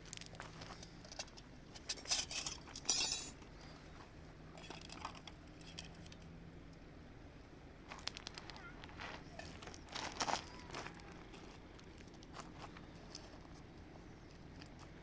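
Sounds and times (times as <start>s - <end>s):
small hard objects clinking: 1.9s - 3.4s.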